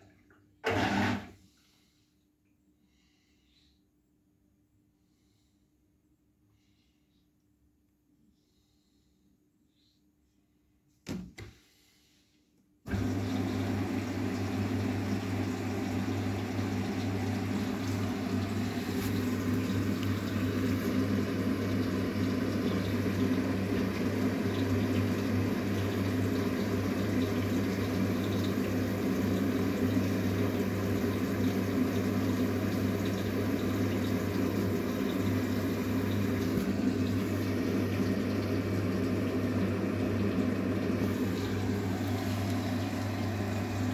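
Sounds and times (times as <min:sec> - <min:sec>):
water rushing into washing machine: 0:00.0 - 0:01.4, 0:12.9 - 0:43.9.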